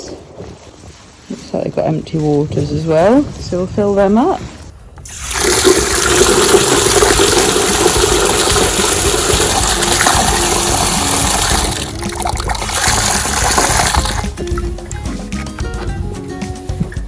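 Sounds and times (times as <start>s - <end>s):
water gushing into containers: 5.0s - 15.0s.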